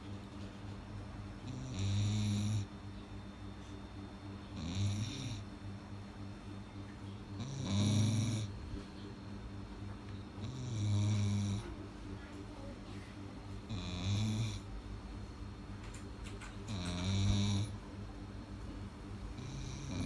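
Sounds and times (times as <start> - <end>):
dog snoring: 1.4 - 2.8, 4.4 - 5.5, 7.3 - 8.8, 10.3 - 11.8, 13.6 - 14.7, 16.4 - 17.8, 19.3 - 20.0.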